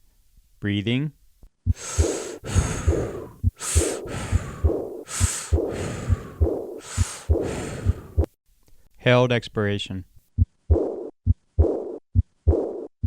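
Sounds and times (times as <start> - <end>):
low heartbeat thumps: 1.6 - 8.3, 10.4 - 12.8
breath sounds through stethoscope: 1.7 - 8.3.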